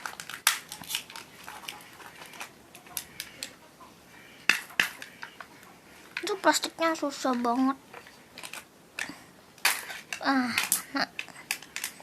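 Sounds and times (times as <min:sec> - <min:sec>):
plastic wrapper crinkling: 0:00.0 - 0:03.3.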